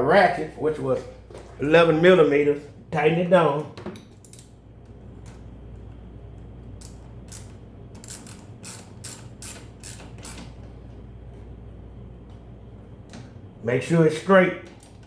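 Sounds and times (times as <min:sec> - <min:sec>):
ratchet wrench clicking: 0:06.8 - 0:10.5.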